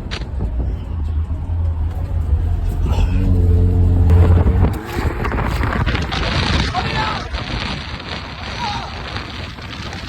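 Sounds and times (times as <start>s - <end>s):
loud car exhaust accelerating: 1.2s - 6.6s.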